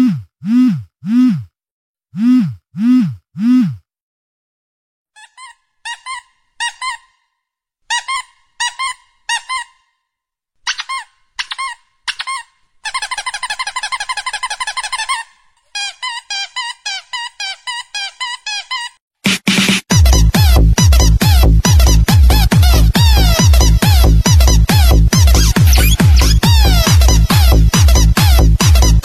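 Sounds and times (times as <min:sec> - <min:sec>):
ringtone of squeaky chirps: 0:05.2 - 0:07.2, 0:25.3 - 0:29.0.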